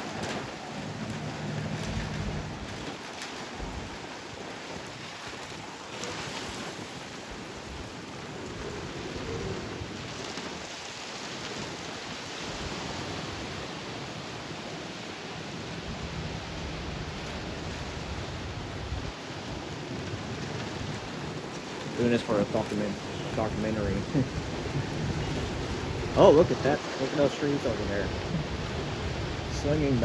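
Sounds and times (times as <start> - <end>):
heavy rain: 0.0 - 4.4, 12.4 - 30.0
wind buffeting microphone: 0.0 - 14.5, 15.4 - 30.0
wind gusting: 0.0 - 14.5, 15.2 - 30.0.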